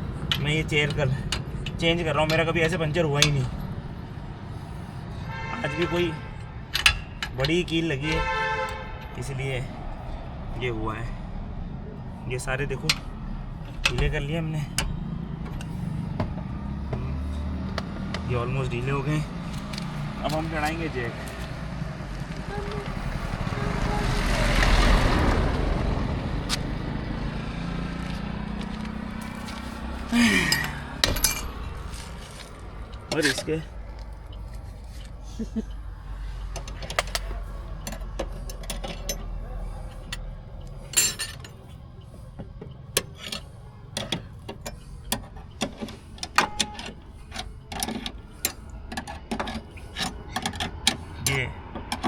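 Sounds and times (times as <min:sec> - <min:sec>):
car passing: 0:00.0 - 0:52.0
scissor jack clicking and clanking: 0:06.8 - 0:07.5.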